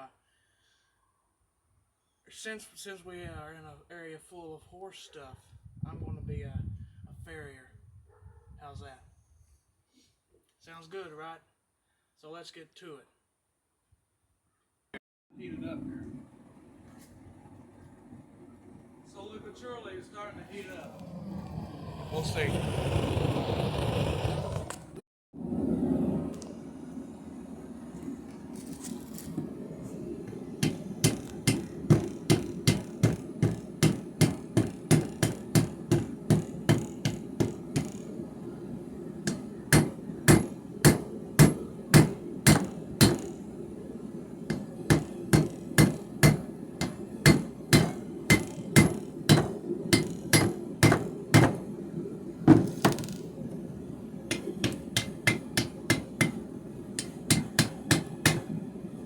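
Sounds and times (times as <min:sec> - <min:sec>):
hammer striking hot steel: 0:30.3 - 0:38.2, 0:39.2 - 0:43.7, 0:44.4 - 0:59.0.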